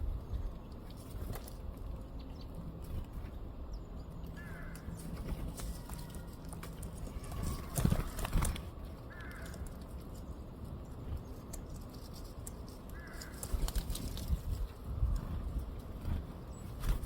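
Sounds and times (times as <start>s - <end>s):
bird calling: 4.3s - 9.8s.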